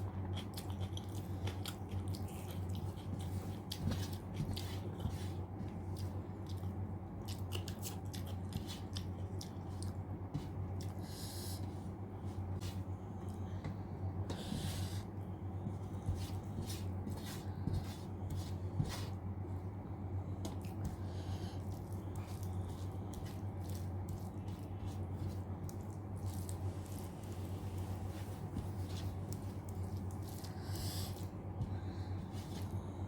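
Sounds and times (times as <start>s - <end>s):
person chewing food: 0.0s - 11.6s, 20.4s - 33.0s
steady low hum: 0.0s - 33.0s.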